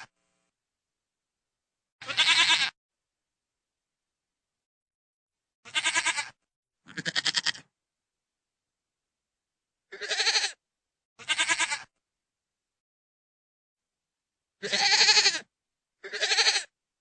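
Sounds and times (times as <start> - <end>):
goat bleating: 2.0 - 2.8, 5.6 - 7.7, 9.9 - 10.6, 11.2 - 11.9, 14.6 - 16.7.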